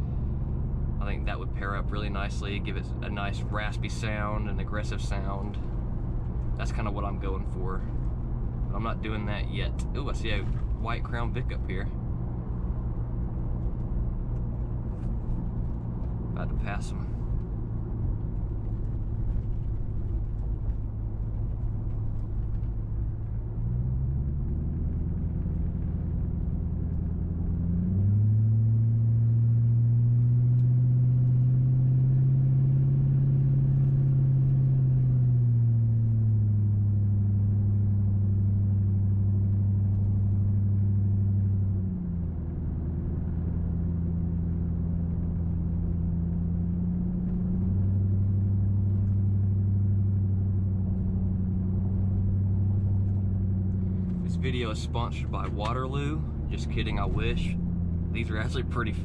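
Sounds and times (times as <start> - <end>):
car exhaust drone: 0.0 - 59.0.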